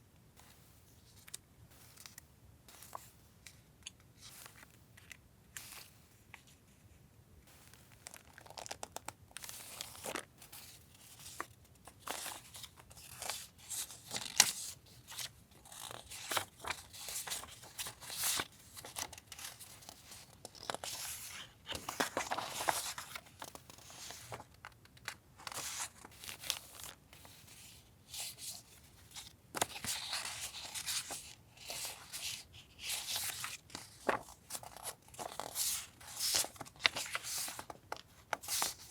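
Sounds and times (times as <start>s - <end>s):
paper and plastic crinkling and tearing: 11.2s - 27.3s, 28.2s - 38.9s.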